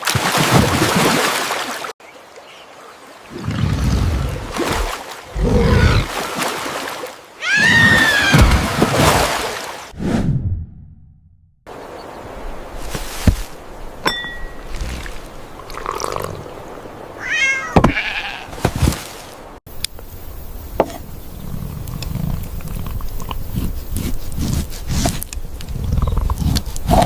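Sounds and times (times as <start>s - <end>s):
cat meowing: 17.2s - 18.4s.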